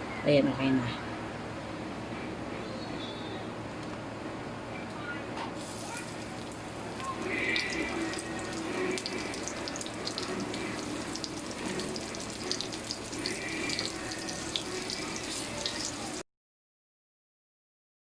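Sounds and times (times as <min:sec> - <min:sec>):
chicken livers sizzling in oil: 0:05.6 - 0:16.2.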